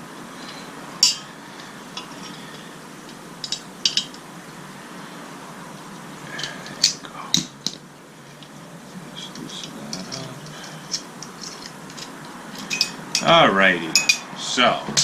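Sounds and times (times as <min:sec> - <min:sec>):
metal parts clicking and clinking: 0:00.4 - 0:04.2, 0:06.4 - 0:07.8, 0:09.3 - 0:14.3.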